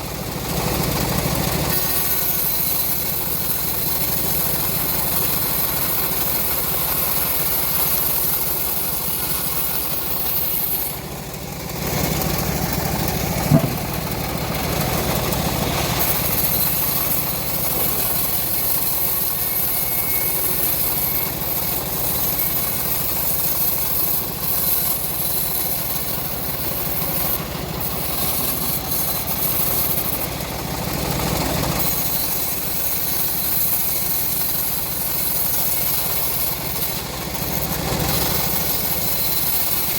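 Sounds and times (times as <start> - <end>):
bandsaw sawmill ripping wood: 0.0 - 39.9
sharp knock: 13.4 - 14.1.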